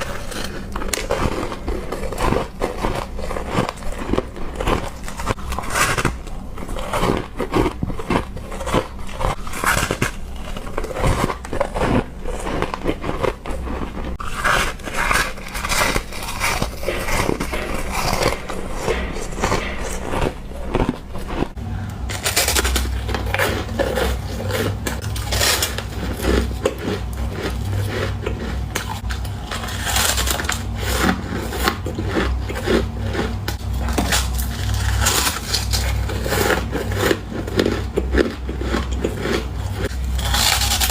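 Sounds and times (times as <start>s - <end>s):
ice being chewed: 0.0s - 40.9s
low hum: 0.0s - 40.9s.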